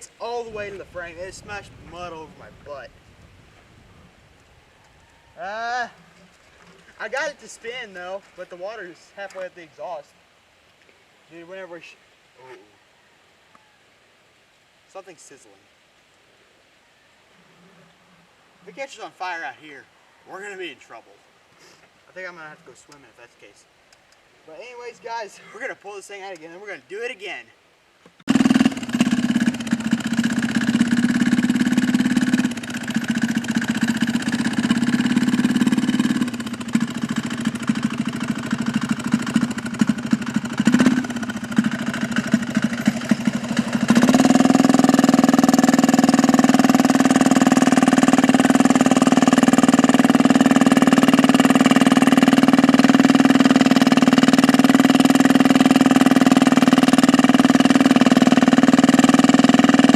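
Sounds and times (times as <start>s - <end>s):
small engine running: 28.3s - 59.9s.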